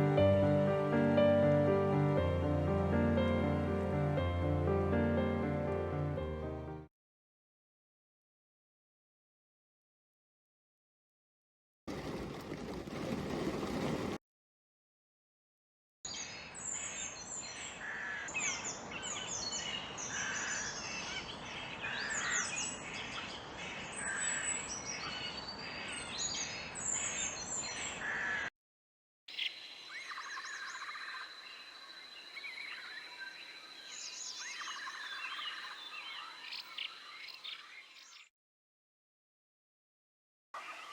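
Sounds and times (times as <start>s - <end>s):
small birds chirping and trilling: 16.1s - 28.5s, 29.3s - 38.3s.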